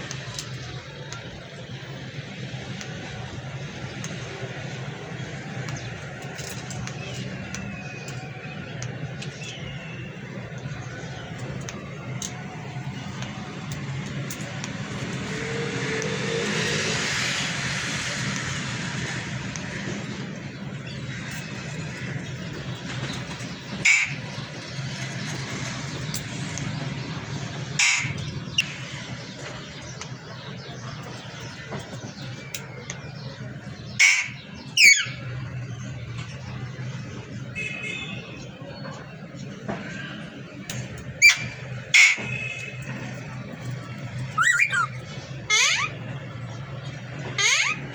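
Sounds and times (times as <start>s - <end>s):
vehicle passing: 14.8s - 20.3s, 42.9s - 47.9s
parrot squawking: 44.3s - 46.0s, 47.4s - 47.9s.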